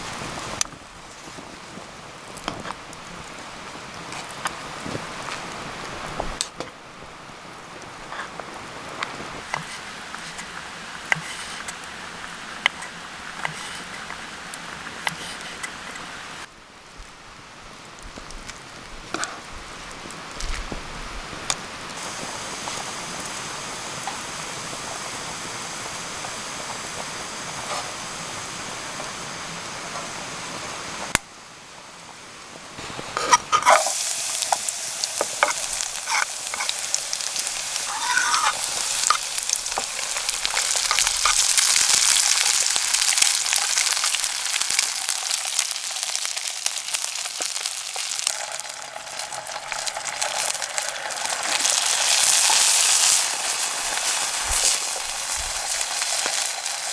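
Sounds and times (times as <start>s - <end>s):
food sizzling in a pan: 7.9s - 16.5s, 20.8s - 31.2s, 31.8s - 56.9s
utensil clicking in a pan: 33.2s - 44.2s.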